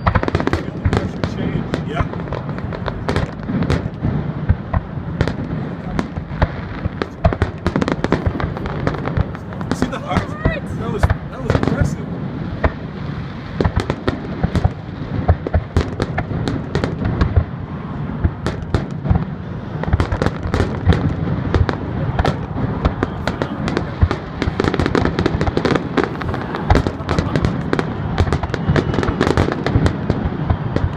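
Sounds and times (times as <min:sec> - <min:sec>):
fireworks bursts and crackling: 0:00.0 - 0:30.9
rumble of booms: 0:00.0 - 0:30.9.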